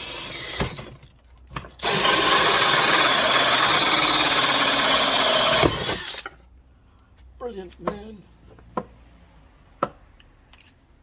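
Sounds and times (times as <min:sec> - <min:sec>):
power drill running: 0:00.0 - 0:00.9, 0:01.8 - 0:06.3.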